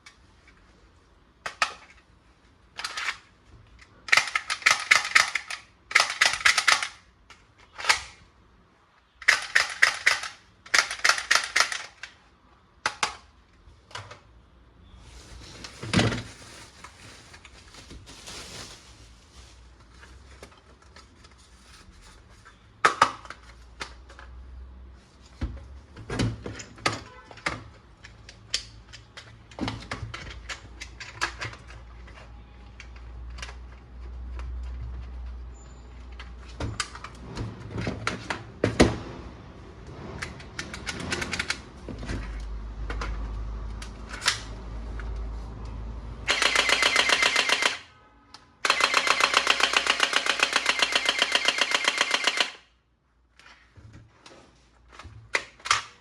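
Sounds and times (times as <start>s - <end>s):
toy guns clicking and rattling: 2.7s - 8.2s, 9.2s - 12.2s, 46.3s - 47.9s, 48.6s - 52.7s.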